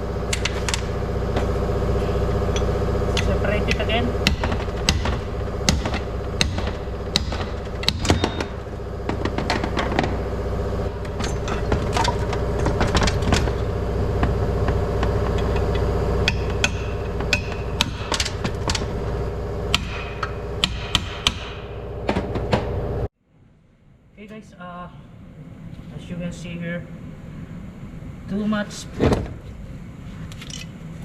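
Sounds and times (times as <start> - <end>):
steady hum: 0.0 - 31.0
hand tools knocking on metal: 14.2 - 18.9.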